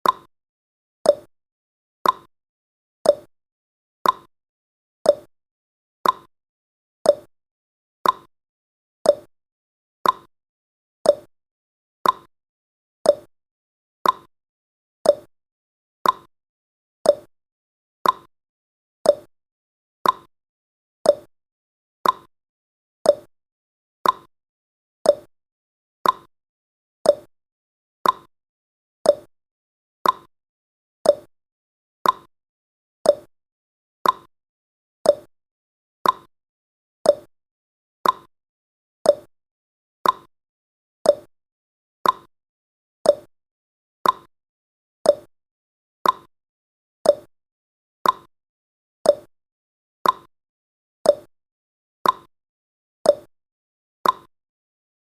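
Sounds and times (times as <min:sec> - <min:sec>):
timer ticking: 0:00.0 - 0:00.3, 0:01.1 - 0:01.3, 0:02.0 - 0:02.3, 0:03.1 - 0:03.3, 0:04.0 - 0:04.3, 0:05.1 - 0:05.3, 0:06.0 - 0:06.3, 0:07.1 - 0:07.3, 0:08.0 - 0:08.3, 0:09.1 - 0:09.3, 0:10.0 - 0:10.3, 0:11.1 - 0:11.3, 0:12.0 - 0:12.3, 0:13.1 - 0:13.3, 0:14.0 - 0:14.3, 0:15.0 - 0:15.3, 0:16.0 - 0:16.3, 0:17.1 - 0:17.3, 0:18.0 - 0:18.3, 0:19.1 - 0:19.3, 0:20.0 - 0:20.3, 0:21.1 - 0:21.3, 0:22.0 - 0:22.3, 0:23.1 - 0:23.3, 0:24.0 - 0:24.3, 0:25.1 - 0:25.3, 0:26.0 - 0:26.3, 0:27.1 - 0:27.3, 0:28.0 - 0:28.3, 0:29.0 - 0:29.3, 0:30.0 - 0:30.3, 0:31.0 - 0:31.3, 0:32.0 - 0:32.3, 0:33.0 - 0:33.3, 0:34.0 - 0:34.3, 0:35.1 - 0:35.3, 0:36.0 - 0:36.3, 0:37.1 - 0:37.3, 0:38.0 - 0:38.3, 0:39.1 - 0:39.3, 0:40.0 - 0:40.3, 0:41.1 - 0:41.3, 0:42.0 - 0:42.3, 0:43.1 - 0:43.3, 0:44.0 - 0:44.3, 0:45.1 - 0:45.3, 0:46.0 - 0:46.3, 0:47.1 - 0:47.3, 0:48.0 - 0:48.3, 0:49.1 - 0:49.3, 0:50.0 - 0:50.3, 0:51.1 - 0:51.3, 0:52.0 - 0:52.3, 0:53.1 - 0:53.3, 0:54.0 - 0:54.3.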